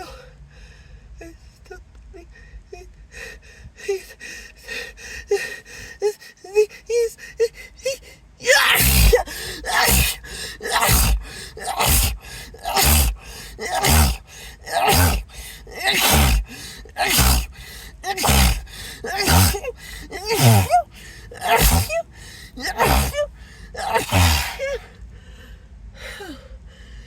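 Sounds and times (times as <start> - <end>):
person sneezing: 8.5 - 24.9.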